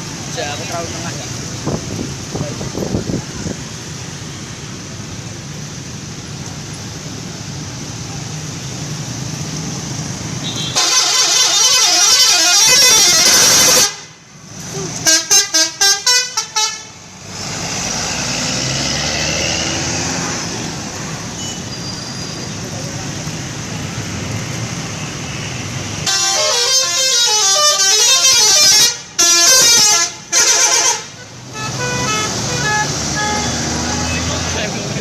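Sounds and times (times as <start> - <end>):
traffic and bus engine noise: 0.0 - 35.0
bus musical air horn: 10.4 - 14.2, 15.0 - 17.0, 26.0 - 34.4.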